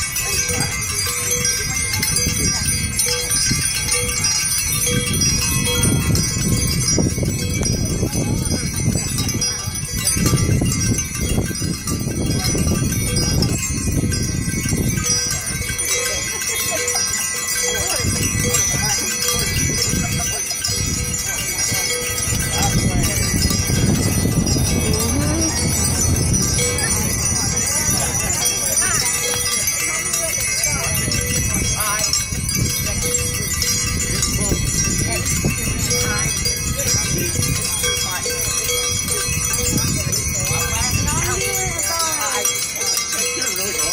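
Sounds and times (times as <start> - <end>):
bells ringing: 0.0 - 43.9
people talking: 0.0 - 43.9
dense low rumble: 21.9 - 29.6.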